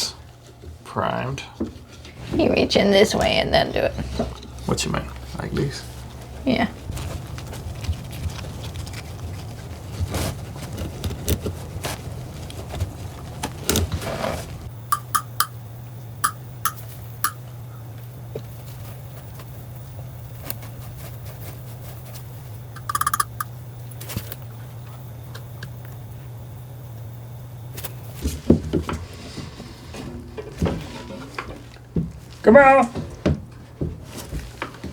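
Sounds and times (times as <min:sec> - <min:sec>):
plastic pipe fittings clicking: 0:15.0 - 0:15.5, 0:16.2 - 0:17.4, 0:22.8 - 0:23.5.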